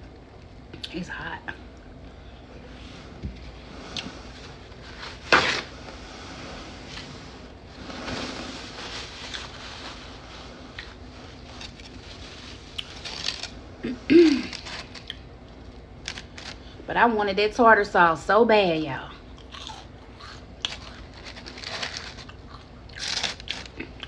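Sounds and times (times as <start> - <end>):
person chewing food: 12.7 - 13.6, 14.4 - 15.3, 19.4 - 24.0.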